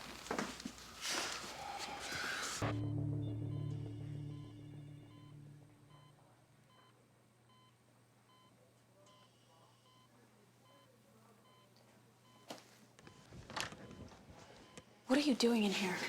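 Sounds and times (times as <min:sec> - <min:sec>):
patient monitor beeping: 0:02.6 - 0:15.0.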